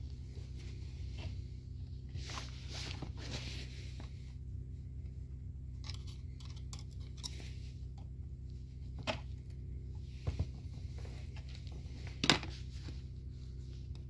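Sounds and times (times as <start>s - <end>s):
crunchy rustles: 0.0s - 4.4s
steady low hum: 0.0s - 14.0s.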